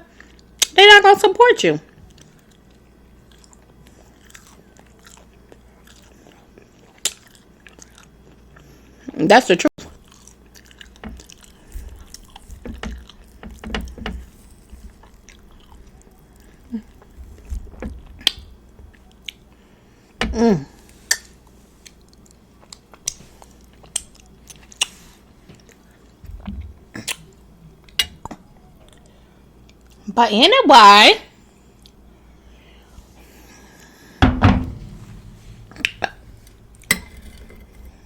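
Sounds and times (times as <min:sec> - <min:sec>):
close chewing and biting: 0:02.1 - 0:08.8, 0:09.9 - 0:13.4, 0:14.9 - 0:19.5.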